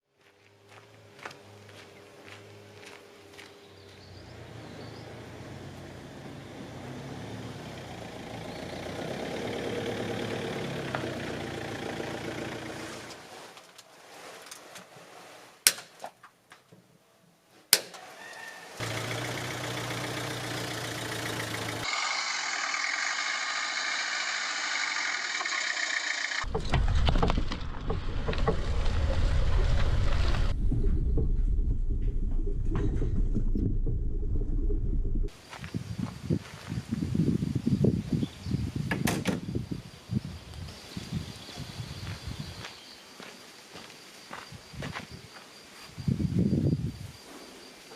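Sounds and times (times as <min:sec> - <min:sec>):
car engine and road noise: 0:00.3 - 0:13.5, 0:18.7 - 0:39.8.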